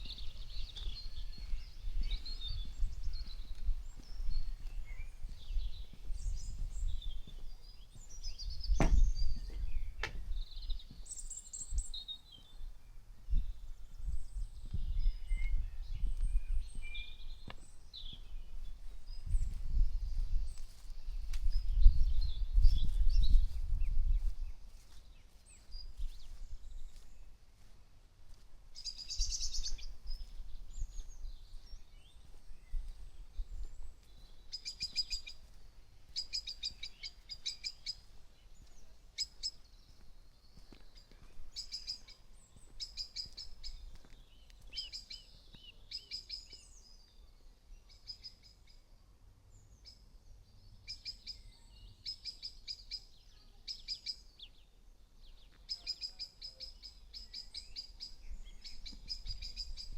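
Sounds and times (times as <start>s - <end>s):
birds singing: 0.0s - 27.7s, 28.8s - 48.9s, 49.5s - 59.9s.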